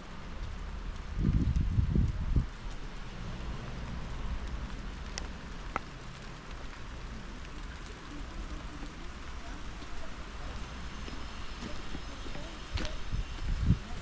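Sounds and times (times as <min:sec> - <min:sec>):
low rumble: 0:00.0 - 0:12.1
rain falling: 0:00.0 - 0:14.0.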